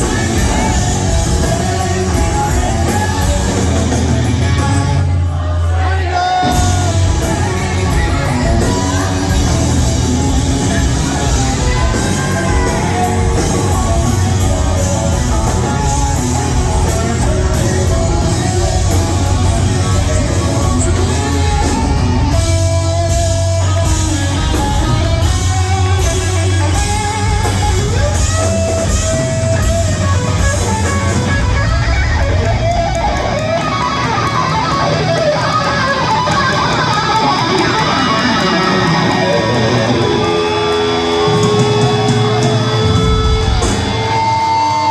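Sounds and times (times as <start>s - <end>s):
heavy bass line: 0.0s - 35.2s
electric guitar: 0.0s - 44.9s.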